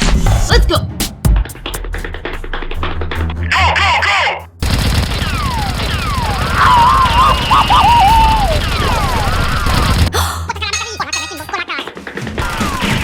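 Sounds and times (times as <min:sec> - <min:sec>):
rapid automatic gunfire: 0:04.6 - 0:10.1, 0:12.3 - 0:13.0
falling whistling whines: 0:06.0 - 0:09.9.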